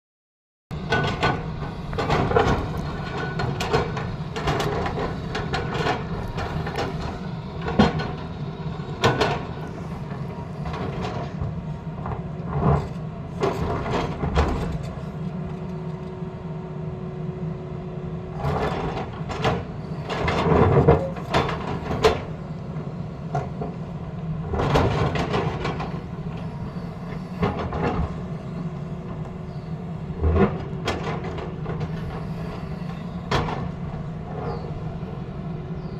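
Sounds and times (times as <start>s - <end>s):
excavator diesel engine running: 0.7s - 35.9s.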